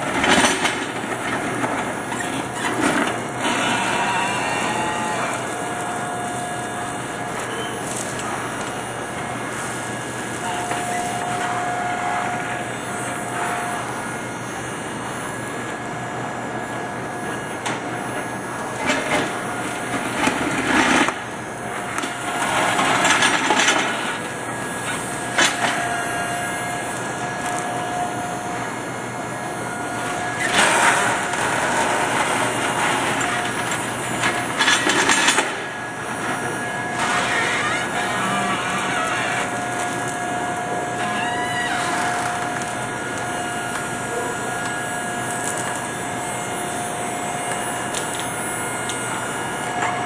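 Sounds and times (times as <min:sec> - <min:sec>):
excavator whine and hum: 0:00.0 - 0:50.0.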